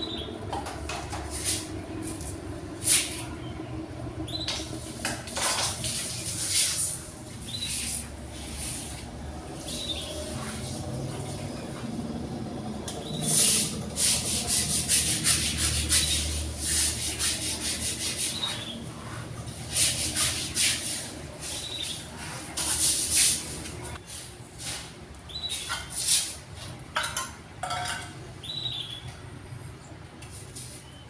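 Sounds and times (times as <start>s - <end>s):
rubbing or scrubbing strokes: 1.2s - 3.3s, 4.8s - 11.8s, 13.2s - 25.0s.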